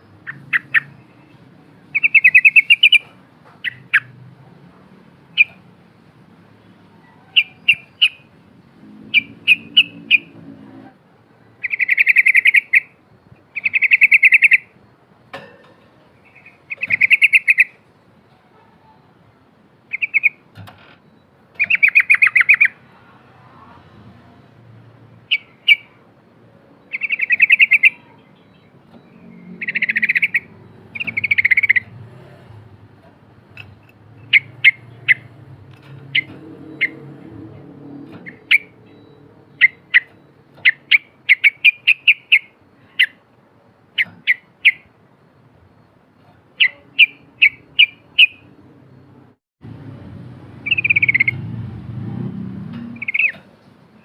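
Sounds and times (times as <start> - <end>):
bird singing buzzy trills: 0.0 - 4.2, 6.6 - 10.7, 11.6 - 15.4, 16.1 - 18.2, 19.0 - 43.2, 43.8 - 49.4, 50.5 - 51.8, 52.8 - 54.0
bird sharp chirps: 0.2 - 4.1, 16.2 - 17.8, 19.9 - 20.4, 21.6 - 22.9, 25.2 - 26.0, 26.8 - 32.1, 33.5 - 37.2, 37.9 - 43.2, 46.6 - 49.0, 50.6 - 51.5, 53.0 - 53.5.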